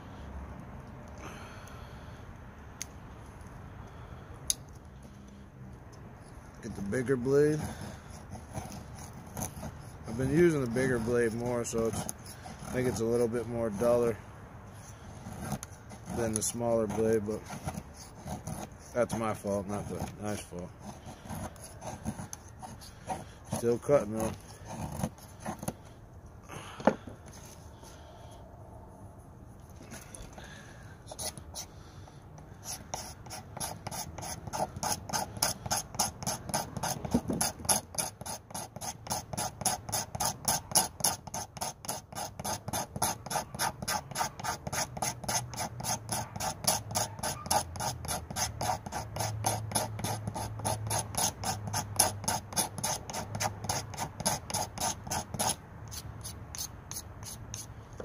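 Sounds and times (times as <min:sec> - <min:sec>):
knife blade shaving wood: 0:06.6 - 0:25.8, 0:31.1 - 0:31.7, 0:32.4 - 0:57.7.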